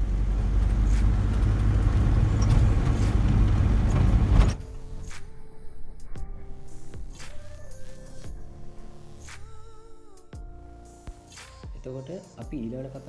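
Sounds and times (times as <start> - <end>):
large engine rumbling: 0.0 - 5.1.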